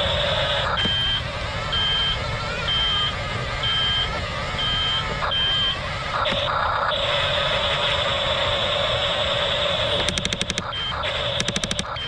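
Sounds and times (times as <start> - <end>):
electric motor and gearbox whine: 0.0 - 12.0
reversing alarm beeping: 0.0 - 12.0.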